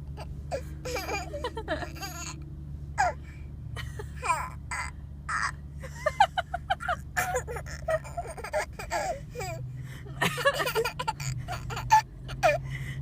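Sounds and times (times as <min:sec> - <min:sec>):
child laughing: 0:00.8 - 0:02.4, 0:05.8 - 0:09.6, 0:10.2 - 0:12.6.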